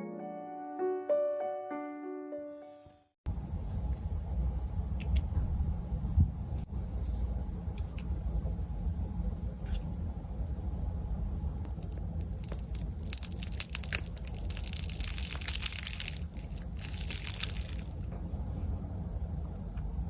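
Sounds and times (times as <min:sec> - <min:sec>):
steady low hum: 0:03.3 - 0:20.0
slime crackling and popping: 0:11.7 - 0:18.1.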